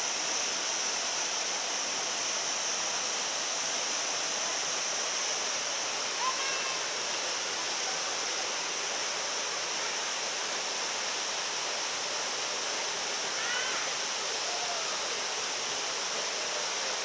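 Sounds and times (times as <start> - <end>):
waterfall rushing: 0.0 - 17.0
faint distant voice calling: 13.3 - 15.1.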